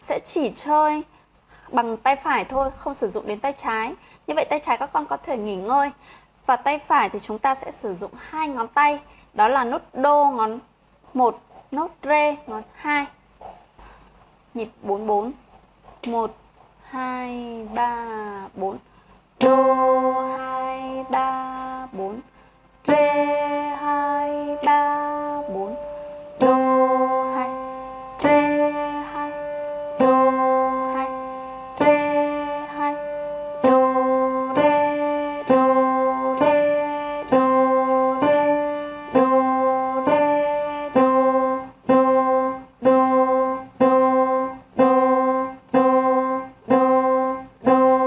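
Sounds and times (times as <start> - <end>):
piano simple melody: 19.4 - 48.0.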